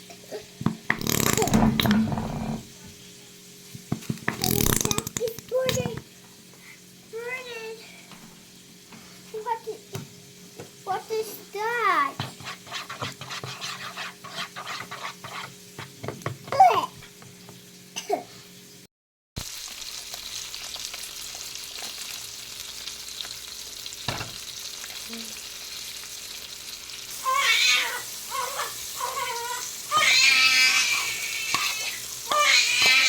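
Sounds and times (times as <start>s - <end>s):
chicken sizzling in a pan: 1.9s - 33.0s
high-pitched wailing cries: 27.2s - 33.0s.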